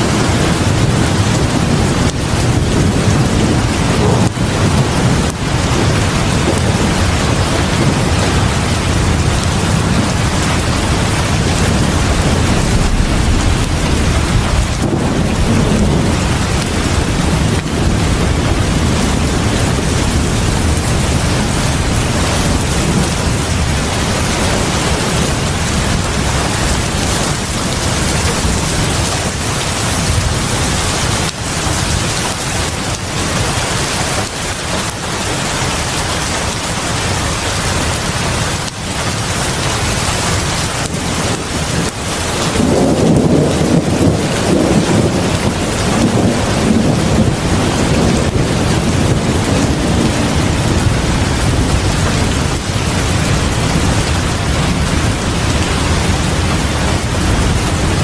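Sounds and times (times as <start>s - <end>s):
deep low rumble: 0.0s - 33.0s
heavy rain on a porch: 0.0s - 58.0s.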